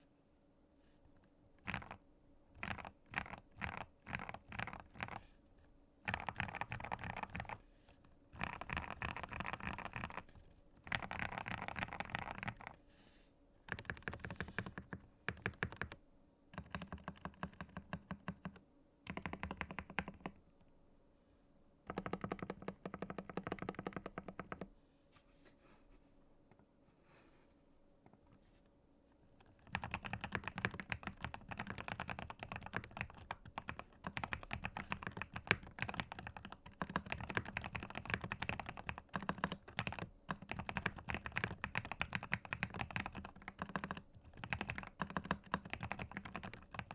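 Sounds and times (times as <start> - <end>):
typing on mechanical keyboard: 1.6 - 5.2, 6.0 - 7.6, 8.3 - 12.8, 13.7 - 16.0, 16.6 - 20.4, 21.9 - 24.7, 29.4 - 46.9.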